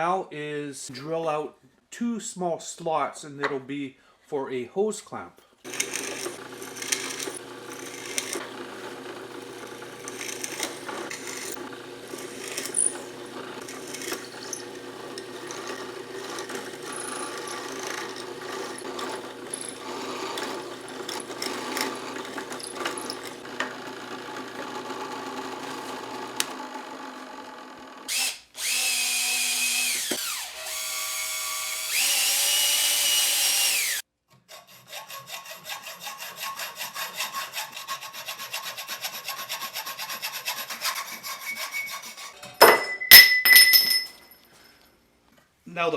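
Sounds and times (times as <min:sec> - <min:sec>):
electric drill cutting into wood: 0:05.7 - 0:34.0.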